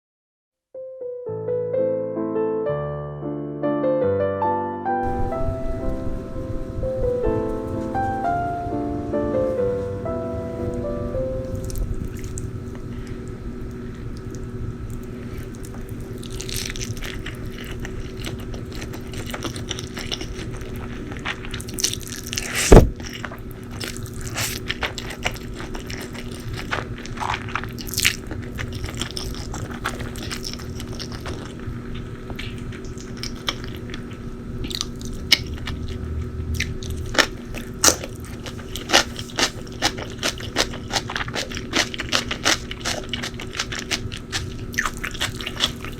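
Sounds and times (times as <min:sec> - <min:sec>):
biting and crunching food: 0:11.5 - 0:45.9
chewing: 0:11.5 - 0:45.9.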